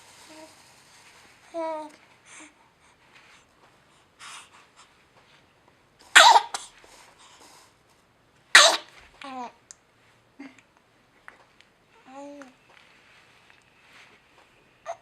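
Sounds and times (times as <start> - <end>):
person sneezing: 6.2 - 6.7, 8.6 - 8.9.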